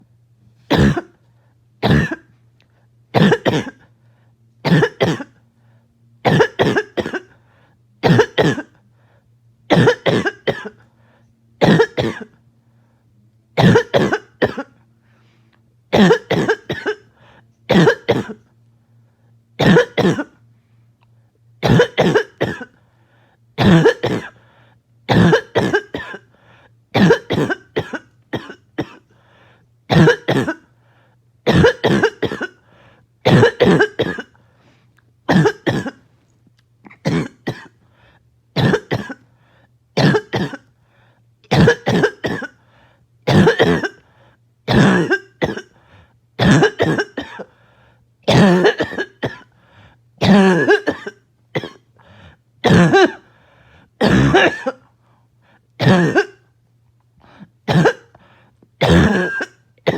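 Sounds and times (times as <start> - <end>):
person coughing harshly: 0.7 - 1.2, 1.8 - 2.4, 3.1 - 3.9, 4.6 - 5.4, 6.2 - 7.4, 8.0 - 8.8, 9.7 - 10.9, 11.6 - 12.4, 13.6 - 14.8, 15.9 - 17.1, 17.7 - 18.5, 19.6 - 20.4, 21.6 - 22.8, 23.6 - 24.4, 25.1 - 26.3, 26.9 - 29.1, 29.9 - 30.7, 31.4 - 34.4, 35.3 - 36.1, 36.9 - 37.8, 38.6 - 39.3, 40.0 - 40.7, 41.5 - 42.6, 43.3 - 44.0, 44.7 - 45.8, 46.4 - 47.6, 48.3 - 49.6, 50.2 - 52.0, 52.6 - 53.4, 54.0 - 54.9, 55.8 - 56.5, 57.3 - 58.2, 58.8 - 59.9.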